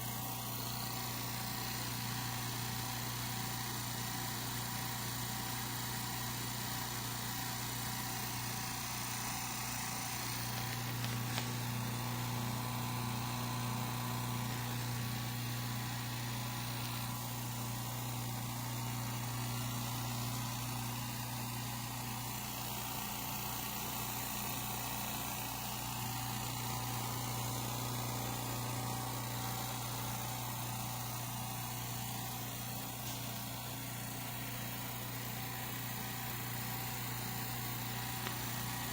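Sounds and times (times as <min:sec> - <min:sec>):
air compressor humming: 0:07.3 - 0:22.0, 0:25.1 - 0:38.9.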